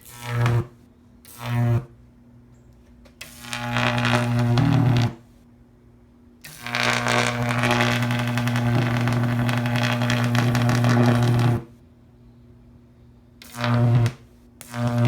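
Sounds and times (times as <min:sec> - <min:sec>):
electric arc buzzing and crackling: 0:00.0 - 0:01.9, 0:03.2 - 0:05.2, 0:06.4 - 0:11.7, 0:13.4 - 0:15.0.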